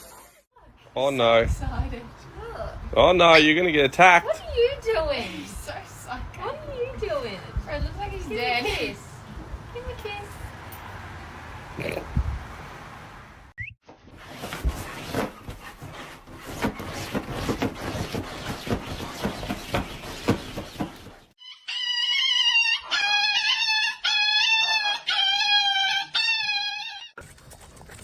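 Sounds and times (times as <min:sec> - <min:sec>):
rustling and clattering: 0:13.9 - 0:21.4
high-pitched animal call: 0:21.4 - 0:27.2.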